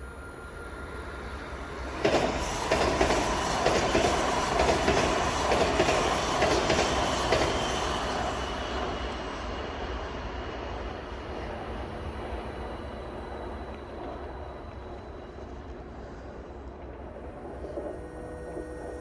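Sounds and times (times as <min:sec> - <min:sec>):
train wheels clacking over rail joints: 0:02.0 - 0:08.3.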